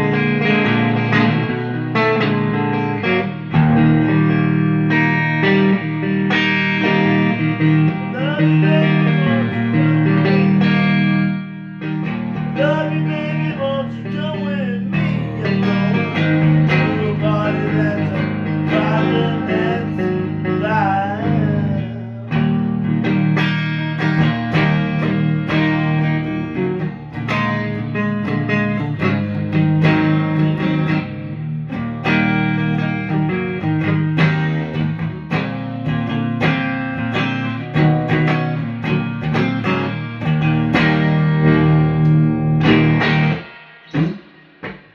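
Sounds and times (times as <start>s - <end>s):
electric guitar lead lines: 0.0s - 44.9s
sustained low guitar chords: 7.1s - 31.4s.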